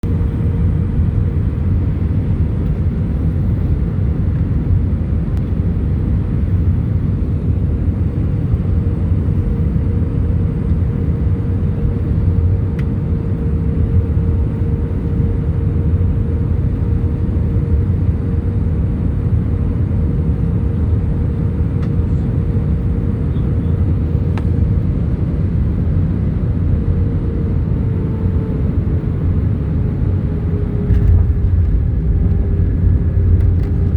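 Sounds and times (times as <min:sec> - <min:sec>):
jet engine rumble: 0:00.0 - 0:33.9
high whine: 0:26.5 - 0:33.9.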